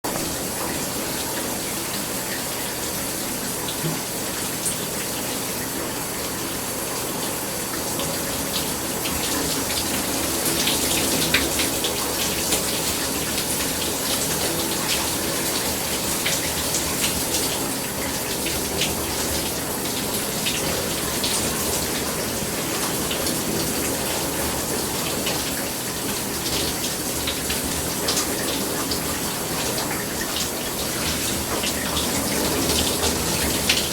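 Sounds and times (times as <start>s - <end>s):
shower water spraying: 0.1s - 33.9s
water splashes and drips: 0.1s - 33.9s.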